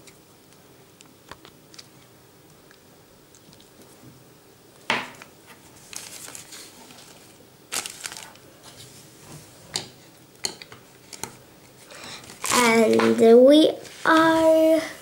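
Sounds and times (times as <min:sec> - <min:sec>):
plastic packaging crinkling: 0:05.8 - 0:08.5, 0:12.2 - 0:13.2.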